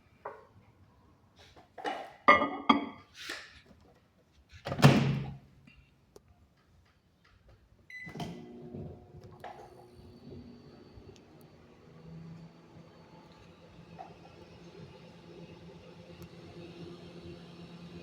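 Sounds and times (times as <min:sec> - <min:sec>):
microwave oven humming: 0:07.9 - 0:18.0.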